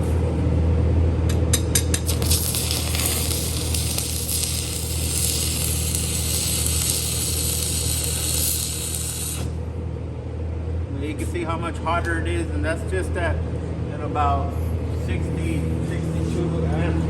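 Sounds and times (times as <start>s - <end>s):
low hum: 0.0s - 17.0s
welding arc sizzling and crackling: 1.5s - 9.6s.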